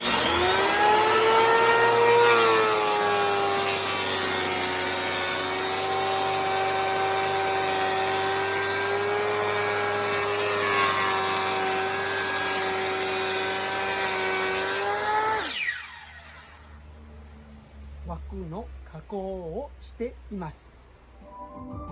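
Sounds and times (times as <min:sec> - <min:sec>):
power tool motor whining: 0:00.0 - 0:16.9.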